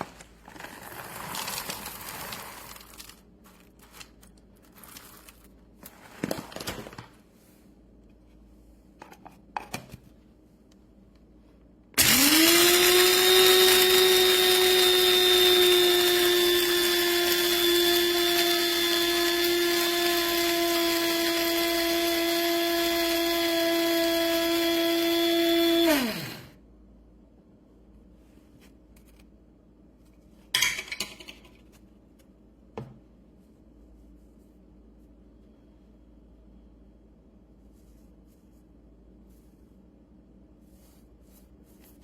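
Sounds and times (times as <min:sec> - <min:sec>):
coffee grinder motor whining: 0:12.0 - 0:26.5.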